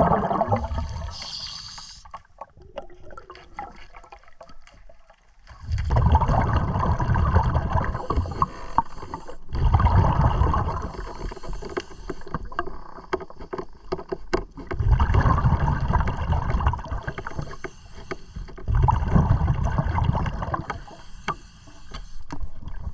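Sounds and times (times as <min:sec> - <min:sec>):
pneumatic air tool underwater: 0:00.5 - 0:02.1, 0:07.9 - 0:09.7, 0:10.6 - 0:12.6, 0:16.9 - 0:18.7, 0:20.5 - 0:22.3.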